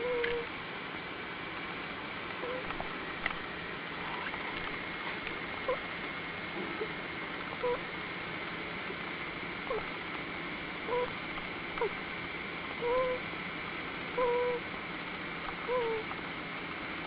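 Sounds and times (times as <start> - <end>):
steady hiss: 0.0 - 17.0
prairie dog snoring peeps: 4.0 - 4.7, 9.6 - 10.0, 12.8 - 13.2, 14.1 - 14.7, 15.5 - 16.1.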